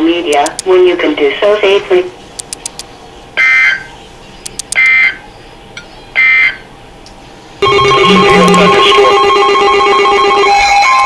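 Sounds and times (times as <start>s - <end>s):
shrill buzzing data bursts: 7.6s - 10.7s
loud electronic ringing tones: 7.6s - 11.0s.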